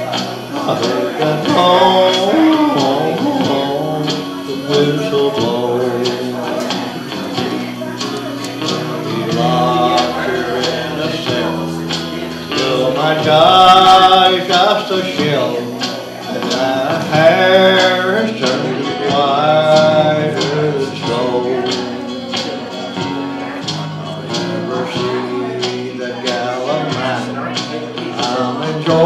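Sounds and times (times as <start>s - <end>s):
man singing: 0.0s - 29.0s
strummed guitar: 0.0s - 29.0s.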